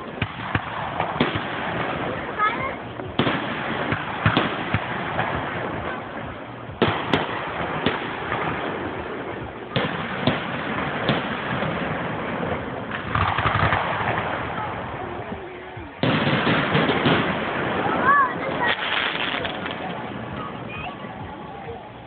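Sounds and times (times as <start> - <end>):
continuous background din: 0.0 - 22.0
firework shells bursting: 6.8 - 14.5.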